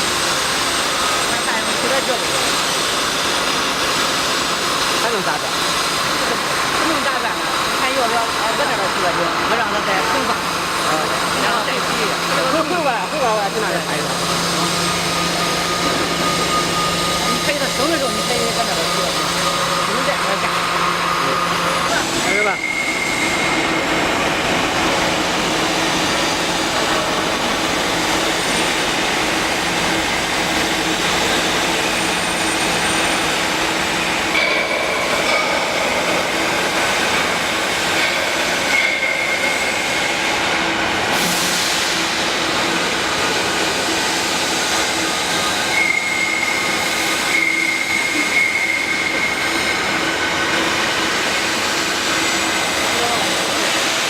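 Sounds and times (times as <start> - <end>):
machine drone with low hum: 0.0 - 46.6
high squeal: 14.3 - 24.0, 45.5 - 50.4.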